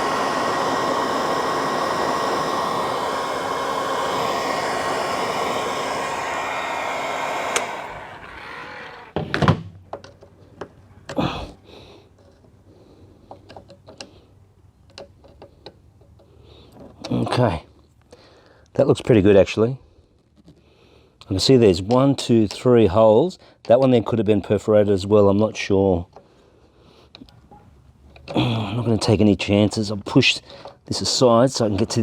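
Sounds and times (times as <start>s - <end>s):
electric blower running: 0.0s - 9.2s.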